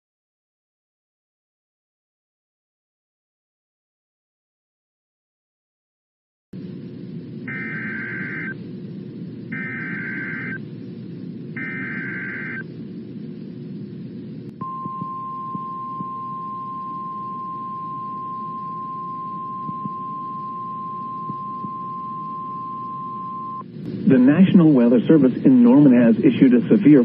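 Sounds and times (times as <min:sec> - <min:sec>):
low radio hiss: 0:06.6 - 0:27.0
steady warning alarm tone: 0:07.4 - 0:08.6, 0:09.5 - 0:10.6, 0:11.6 - 0:12.7, 0:14.6 - 0:23.6
warbling digital data tones: 0:07.5 - 0:08.6, 0:09.5 - 0:10.6, 0:11.6 - 0:12.7.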